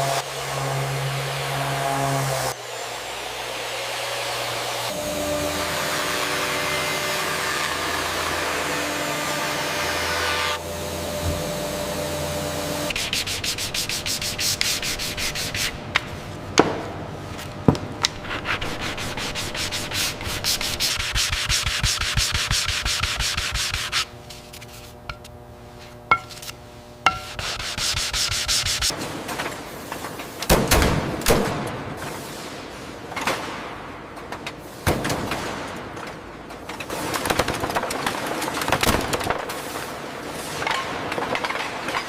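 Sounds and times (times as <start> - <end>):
machine hum: 0.0 - 30.1
rapid sanding strokes: 12.9 - 15.8, 18.1 - 25.1, 27.1 - 28.9.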